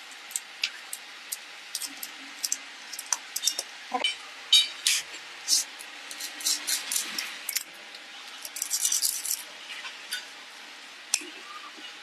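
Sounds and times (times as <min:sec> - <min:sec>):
small metal objects clinking: 0:08.4 - 0:09.5.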